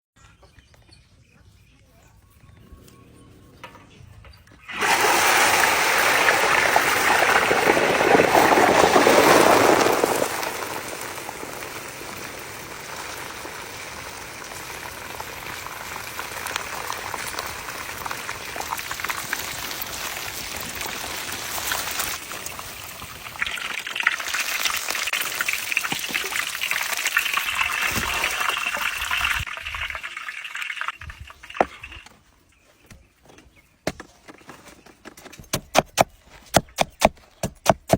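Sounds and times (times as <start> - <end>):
fish sizzling in hot oil: 4.7 - 8.5, 9.8 - 32.0.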